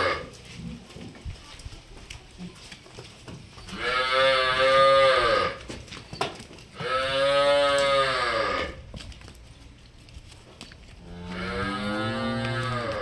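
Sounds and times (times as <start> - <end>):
cow mooing: 0.0 - 0.3, 3.7 - 5.6, 6.8 - 8.8, 11.0 - 13.0.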